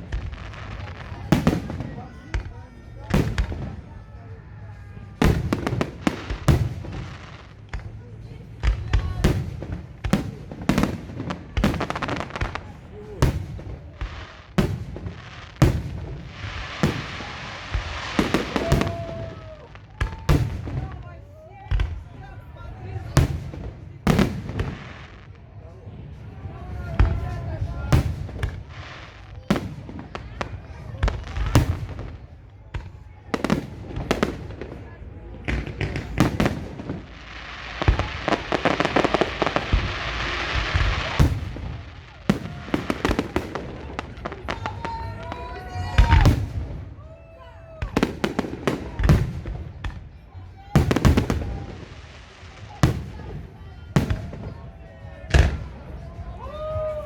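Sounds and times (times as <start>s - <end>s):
fireworks bangs and crackling: 0.0s - 57.0s
firework shells booming: 27.0s - 45.4s.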